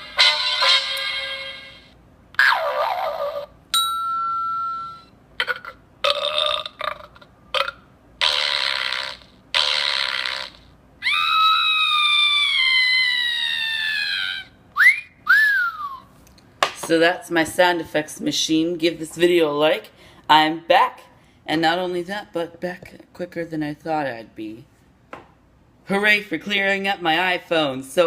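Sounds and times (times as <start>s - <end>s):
toy beep: 4.2s - 5.1s
falling whistle-like tone: 14.8s - 16.1s.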